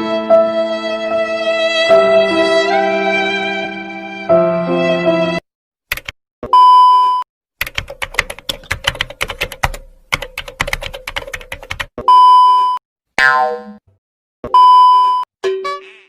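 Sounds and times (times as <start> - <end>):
keyboard key clicks: 5.9 - 6.2, 7.6 - 11.9
high censor bleep: 6.6 - 7.2, 12.1 - 12.8, 14.5 - 15.3.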